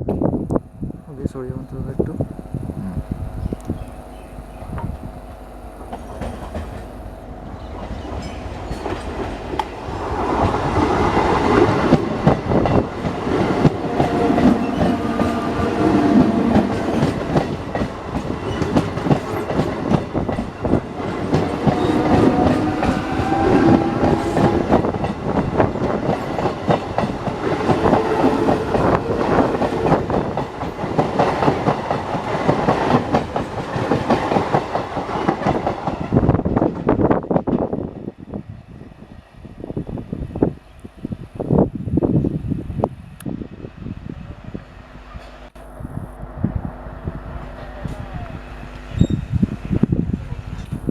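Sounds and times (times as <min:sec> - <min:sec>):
wavering train whine: 0:00.0 - 0:50.9
train wheels clattering: 0:05.8 - 0:37.6.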